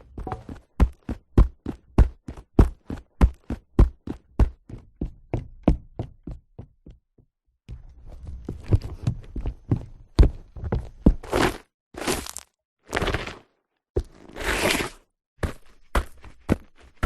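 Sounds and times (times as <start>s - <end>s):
footsteps in sneakers: 0.0s - 7.0s, 7.7s - 11.6s.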